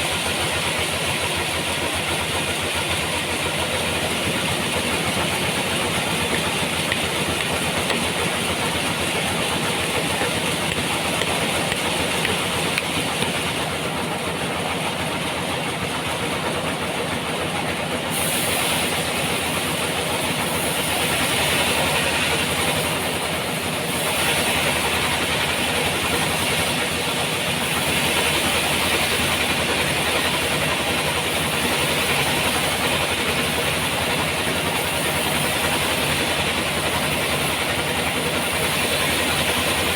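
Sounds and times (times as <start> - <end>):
machine drone: 16.8 - 39.9
saw hissing: 18.0 - 39.9.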